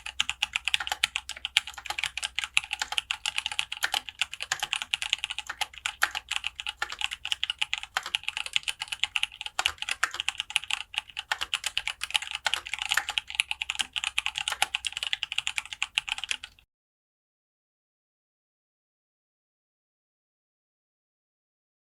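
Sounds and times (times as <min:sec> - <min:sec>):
fast mechanical keyboard typing: 0:00.0 - 0:16.6.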